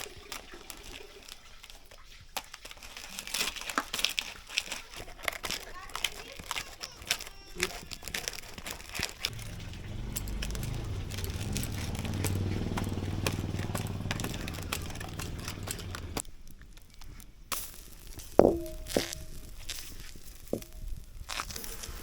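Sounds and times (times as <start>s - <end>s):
faint crackling: 0.0s - 22.0s
low engine hum: 9.3s - 16.2s
metal pot knocked and ringing: 18.4s - 19.2s.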